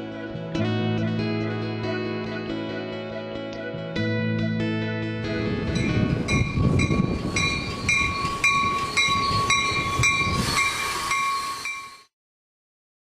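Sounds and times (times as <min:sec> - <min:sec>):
train rumbling: 0:05.2 - 0:12.1
bell striking: 0:05.6 - 0:12.1
steady high ringing tone: 0:05.7 - 0:12.1.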